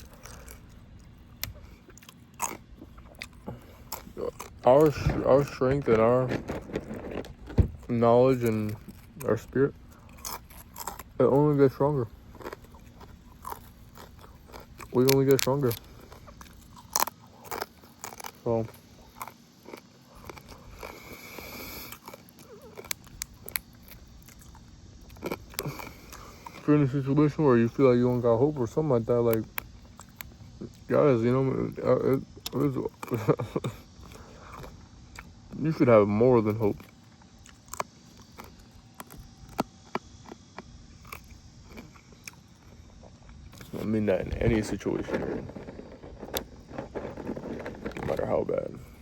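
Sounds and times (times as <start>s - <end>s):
soft chewing: 0.0s - 35.6s, 36.4s - 49.0s
soft rustling: 4.7s - 8.5s, 43.6s - 49.0s.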